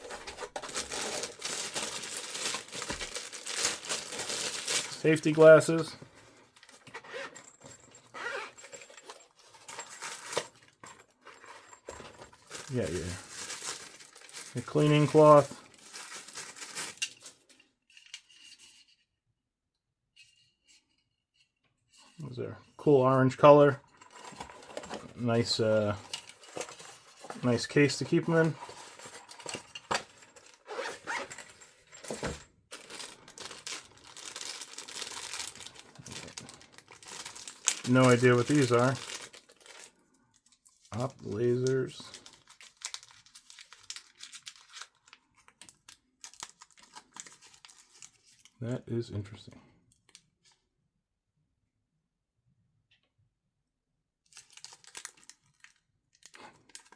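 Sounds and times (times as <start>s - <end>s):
packaging crinkling: 0.0s - 5.7s, 8.3s - 17.5s, 32.7s - 41.1s, 42.0s - 48.5s, 54.3s - 56.9s.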